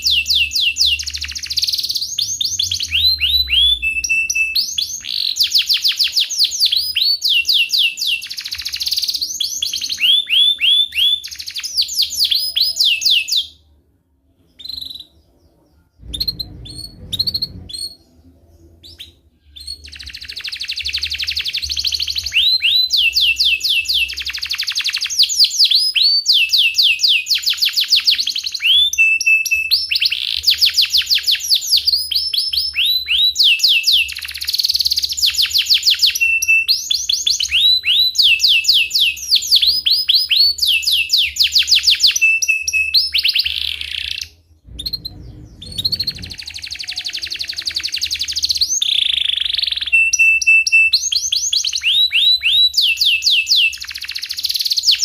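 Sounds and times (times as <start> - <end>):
canary singing trills: 0.0 - 13.7, 14.4 - 55.0
short low noise: 16.0 - 18.7, 44.6 - 46.6.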